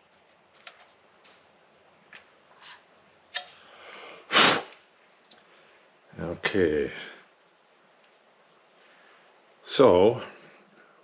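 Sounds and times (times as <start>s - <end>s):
plastic parts clicking: 0.5s - 1.0s
loud short sniff: 4.3s - 4.8s.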